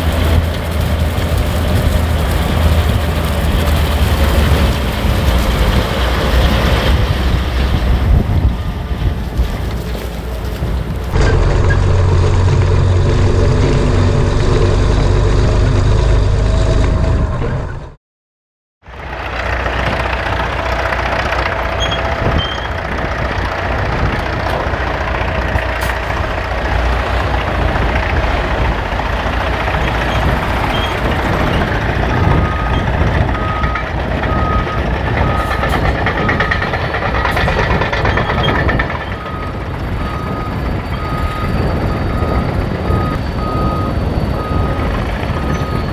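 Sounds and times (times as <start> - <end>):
machinery din: 0.0 - 18.0, 19.8 - 45.9
truck engine running close: 0.0 - 18.0, 18.8 - 45.9
reversing alarm beeping: 30.1 - 45.9.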